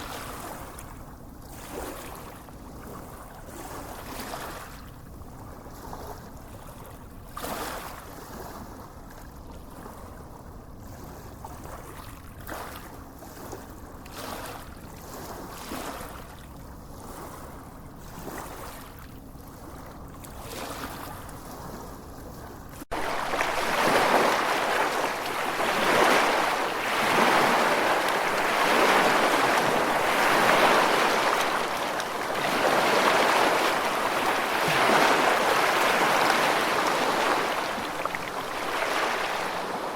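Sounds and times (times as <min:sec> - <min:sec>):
sea waves washing onto beach: 0:00.0 - 0:00.5, 0:22.8 - 0:39.9.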